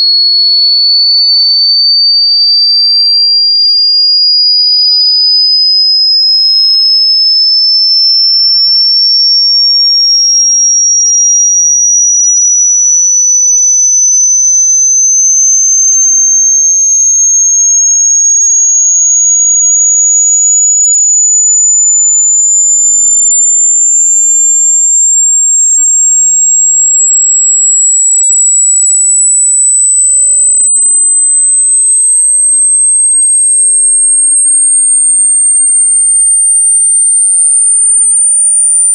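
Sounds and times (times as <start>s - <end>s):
high-pitched sine tone sweep: 0.0s - 38.9s.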